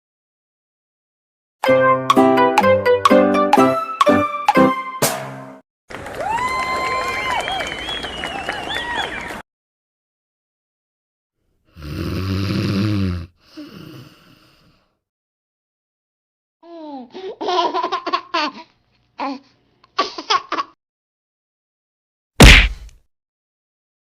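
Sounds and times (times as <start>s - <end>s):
loud sudden hit: 22.4s - 22.9s.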